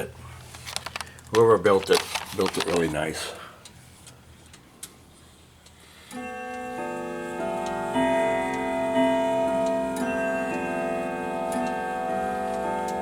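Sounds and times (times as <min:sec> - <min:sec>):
grandfather clock ticking: 0:05.6 - 0:13.0
clock chime tune: 0:06.1 - 0:13.0.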